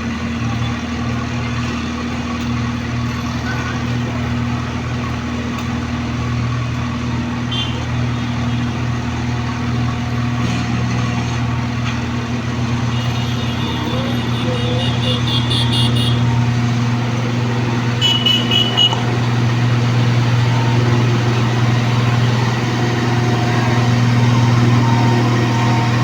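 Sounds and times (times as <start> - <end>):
diesel engine droning: 0.0 - 26.0.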